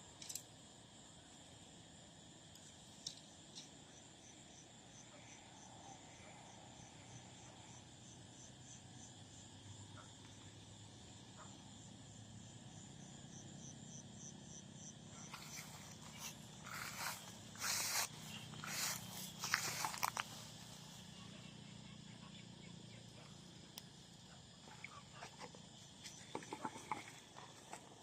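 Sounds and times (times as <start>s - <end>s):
cricket chirping: 0.0s - 28.0s
insect chorus buzzing: 0.0s - 28.0s
small clicks: 0.2s - 0.5s.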